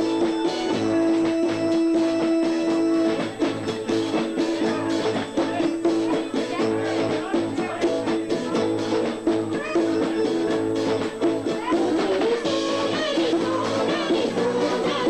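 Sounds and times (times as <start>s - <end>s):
wavering melodic line: 0.0s - 6.9s
drums steady beat: 0.0s - 15.0s
held instrument notes: 0.0s - 15.0s.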